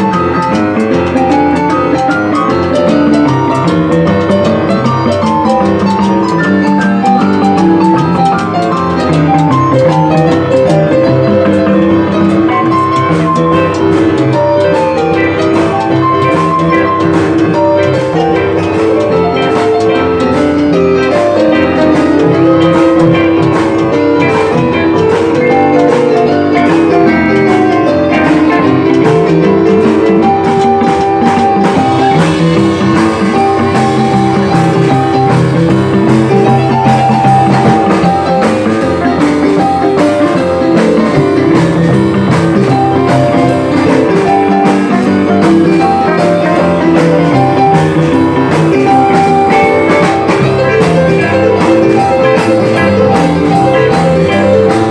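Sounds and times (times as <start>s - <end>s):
drum beat: 0.0s - 54.9s
guitar: 0.0s - 54.9s
live band playing boogie-woogie: 0.0s - 54.9s.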